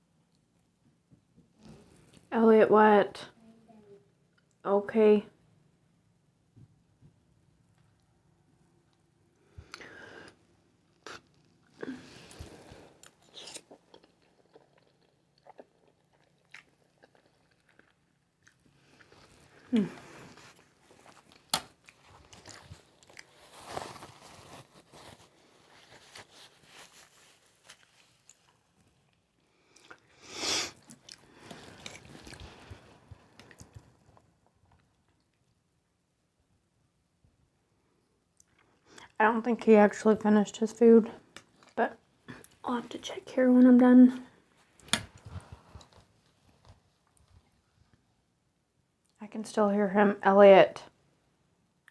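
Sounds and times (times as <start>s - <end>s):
person chewing noodles: 11.0s - 23.5s, 27.8s - 35.5s
chewing with wet mouth clicks: 13.0s - 19.2s.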